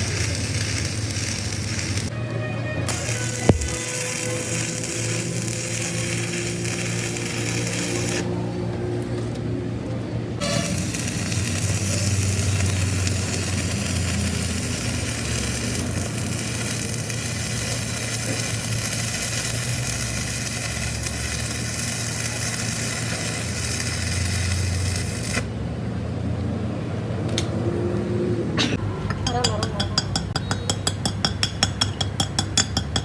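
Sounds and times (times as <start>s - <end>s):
machinery humming: 0.0s - 28.8s
machinery hiss: 10.4s - 25.5s.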